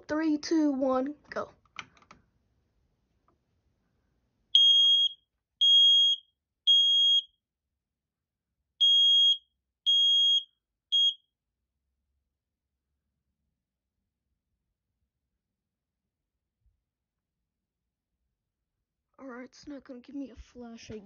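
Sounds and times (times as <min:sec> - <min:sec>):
smoke alarm beeps: 0:04.6 - 0:07.4, 0:08.8 - 0:11.3.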